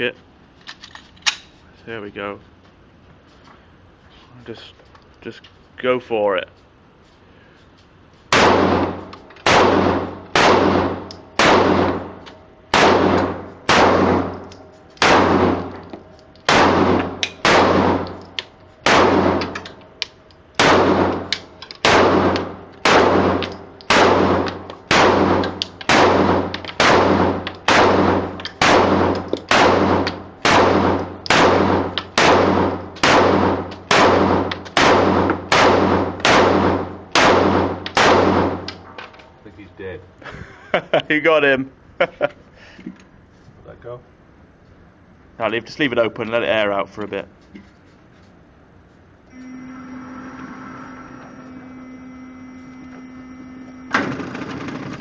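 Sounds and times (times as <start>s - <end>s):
pistol shots with ringing echo: 8.3s - 15.8s, 16.4s - 19.7s, 20.6s - 38.7s.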